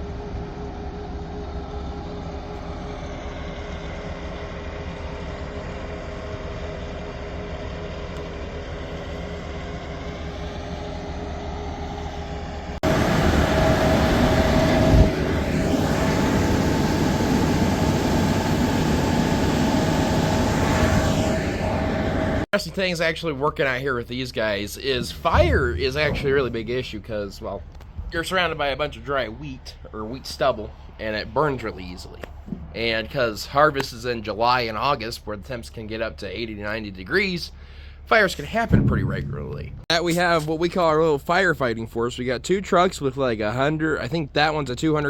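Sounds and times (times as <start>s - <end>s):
truck engine running: 0.0s - 22.4s, 23.2s - 35.3s
engine whine: 0.0s - 22.5s.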